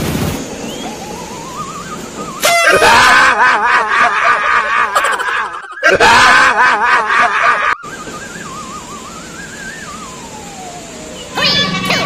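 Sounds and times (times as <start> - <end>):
wobbling whistle-like tone sliding down: 0.5 - 2.8, 7.7 - 11.6
loud wavering wailing sound: 0.6 - 11.9.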